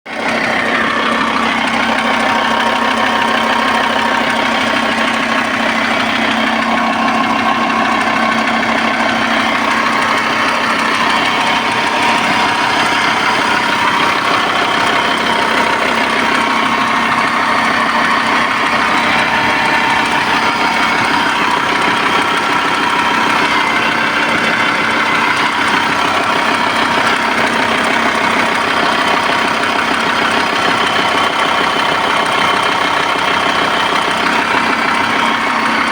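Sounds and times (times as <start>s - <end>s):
engine running: 0.0s - 35.9s
rhythmic engine knock: 0.1s - 35.9s.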